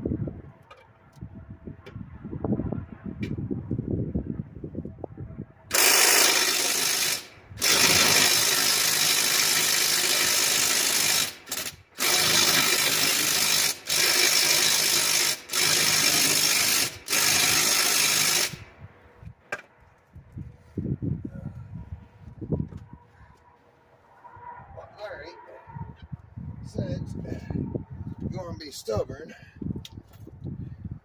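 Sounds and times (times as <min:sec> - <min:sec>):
power tool bursts: 0:05.7 - 0:18.6.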